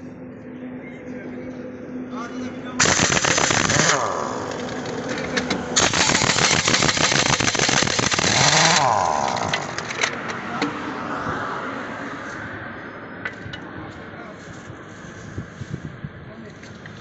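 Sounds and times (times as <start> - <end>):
pneumatic impact wrench hammering: 2.8 - 10.3.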